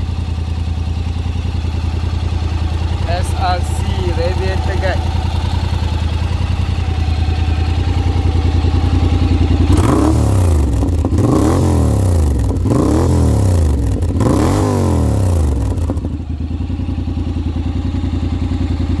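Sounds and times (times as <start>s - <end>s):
motorcycle engine idling and revving: 0.0s - 19.0s.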